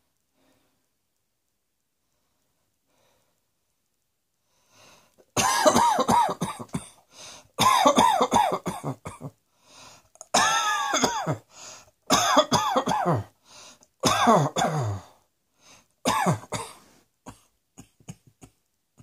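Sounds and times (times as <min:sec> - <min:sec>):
person coughing: 0:05.4 - 0:07.0, 0:07.6 - 0:09.4, 0:10.3 - 0:11.5, 0:12.1 - 0:13.3, 0:14.0 - 0:15.2, 0:16.1 - 0:18.6.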